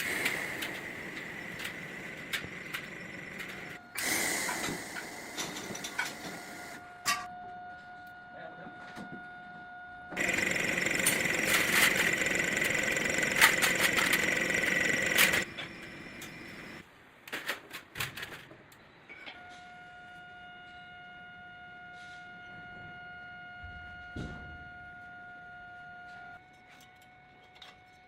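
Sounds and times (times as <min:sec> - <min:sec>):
machinery running with rattling: 0:00.0 - 0:06.8, 0:10.2 - 0:16.8
steady electric hum: 0:00.0 - 0:07.0.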